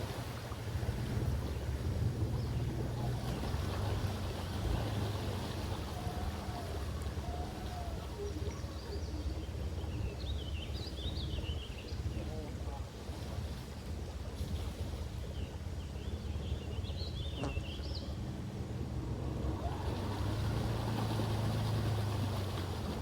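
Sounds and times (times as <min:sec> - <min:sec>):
engine rumbling at low revs: 0:00.0 - 0:23.0.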